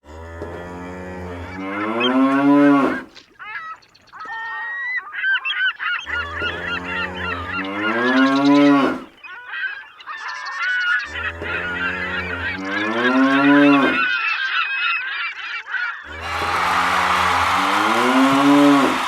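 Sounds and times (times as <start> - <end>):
low moo-like animal call: 0.0 - 3.1, 6.0 - 9.2, 11.0 - 14.2, 16.0 - 19.0
goose-like honks: 10.9 - 14.1.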